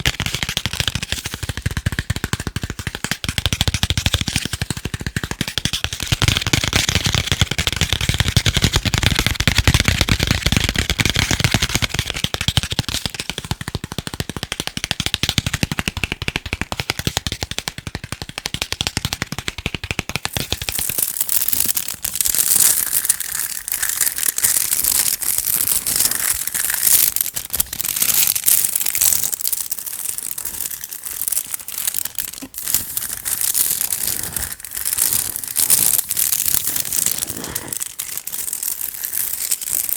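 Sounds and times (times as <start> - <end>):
tapping on chocolate packaging: 18.1 - 39.9
high crinkling: 20.3 - 39.9.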